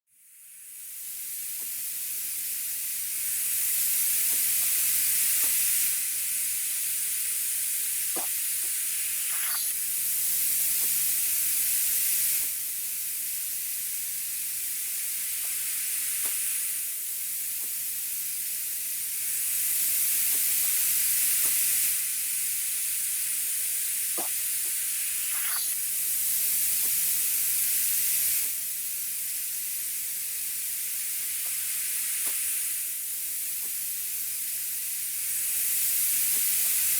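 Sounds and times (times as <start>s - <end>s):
iguana hissing: 8.1s - 9.8s, 24.0s - 25.8s.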